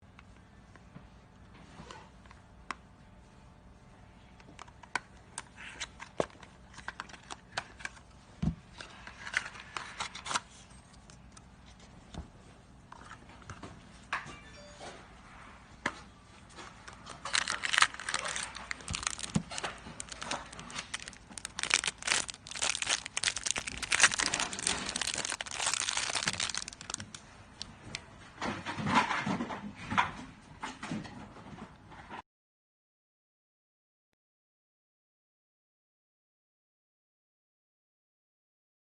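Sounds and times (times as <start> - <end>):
crinkling and tearing: 16.8 - 28.0
dense crackle: 17.2 - 27.2.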